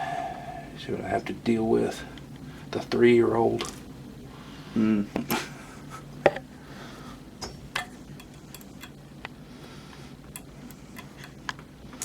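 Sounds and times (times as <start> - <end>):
low steady hum: 0.0 - 12.0
small parts clicking and tapping: 7.4 - 9.4.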